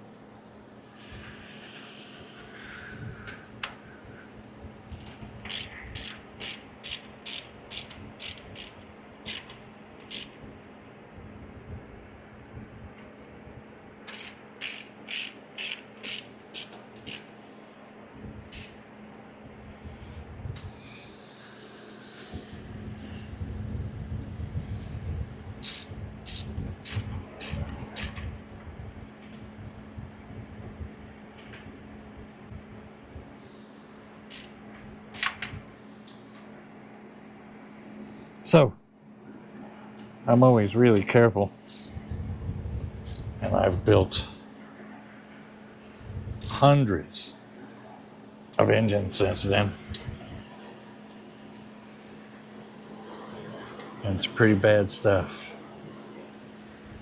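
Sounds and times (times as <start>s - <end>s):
socket ratchet clicking: 4.9s - 10.4s, 14.1s - 17.3s, 18.5s - 18.8s, 25.6s - 28.2s, 34.3s - 34.6s, 35.2s - 35.5s, 41.6s - 41.9s.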